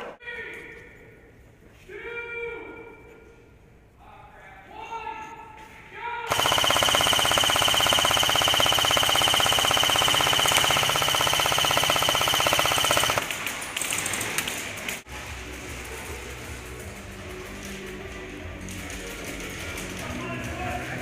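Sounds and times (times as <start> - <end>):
airsoft gun full-auto burst: 6.3 - 13.4
faint rapid shots: 6.3 - 13.5.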